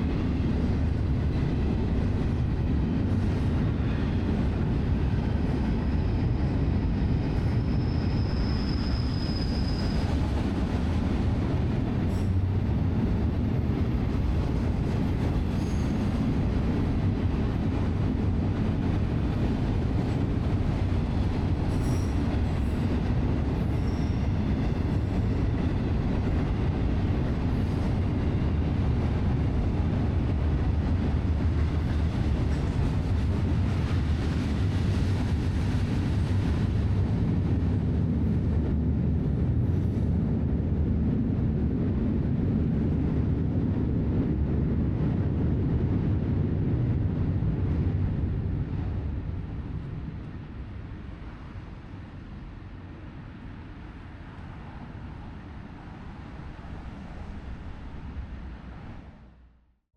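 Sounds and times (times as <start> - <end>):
train rumbling on rails: 0.0 - 59.7
high wheel squeal: 7.4 - 10.2, 21.7 - 22.3, 23.6 - 24.4.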